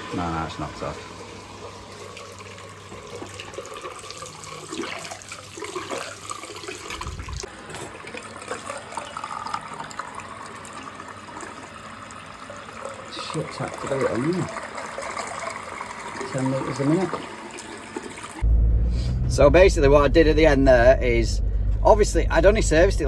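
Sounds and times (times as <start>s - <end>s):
water running from a tap: 0.1s - 18.4s
low thump: 18.4s - 23.0s.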